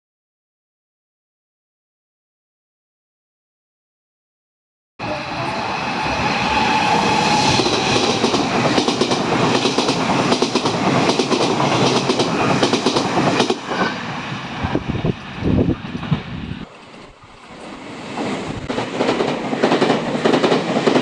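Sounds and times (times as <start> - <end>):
train rumble: 5.0 - 21.0
train wheels clacking: 6.0 - 14.2, 17.5 - 21.0.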